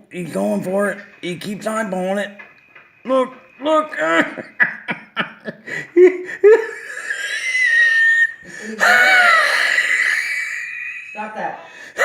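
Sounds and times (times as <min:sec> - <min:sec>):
person laughing hard: 0:04.0 - 0:11.4.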